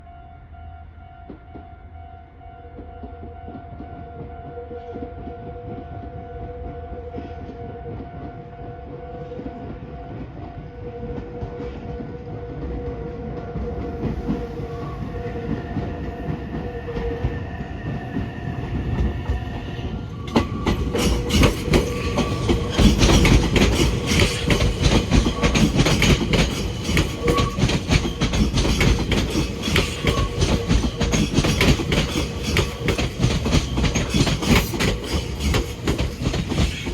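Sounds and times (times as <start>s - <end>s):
crossing warning bell ringing: 14.0s - 36.9s
train wheels clacking over rail joints: 14.0s - 36.9s.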